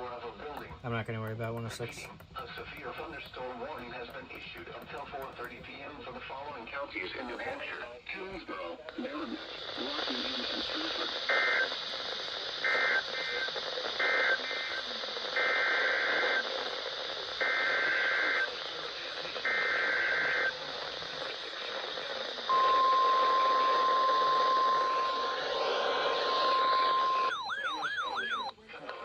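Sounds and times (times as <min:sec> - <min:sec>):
static hiss: 0:00.0 - 0:27.3
single-pitch warning alarm tone: 0:22.5 - 0:25.4, 0:26.0 - 0:28.5
two-pitch data tone bursts: 0:22.5 - 0:27.4.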